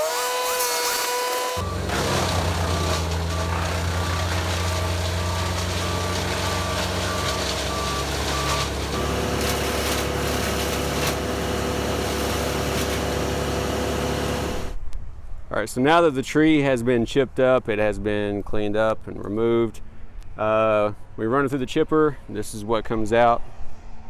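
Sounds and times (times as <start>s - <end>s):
reversing alarm beeping: 1.5s - 14.8s
heavy vehicle engine running: 1.6s - 14.8s.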